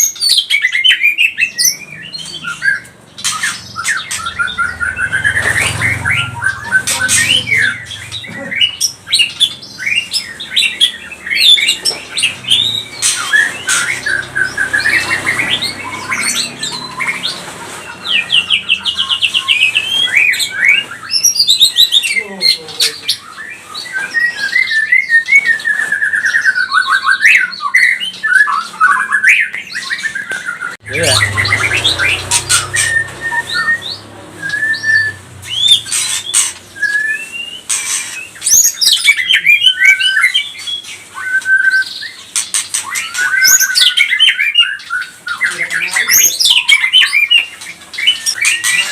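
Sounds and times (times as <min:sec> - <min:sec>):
bird singing whistled song: 0:00.0 - 0:22.2, 0:23.1 - 0:48.9.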